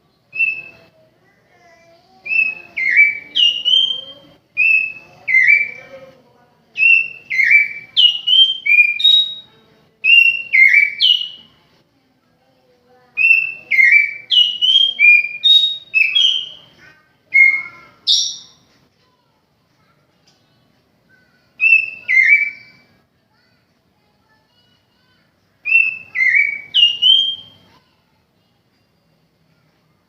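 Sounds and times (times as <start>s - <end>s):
bird singing whistled phrases: 0.3s - 0.9s, 2.2s - 5.9s, 6.8s - 11.5s, 13.2s - 18.6s, 21.6s - 22.9s, 25.6s - 27.7s.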